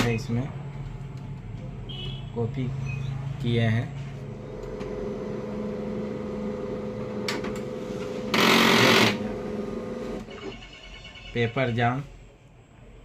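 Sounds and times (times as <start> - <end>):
printer motor and gear hum: 4.2 - 10.3.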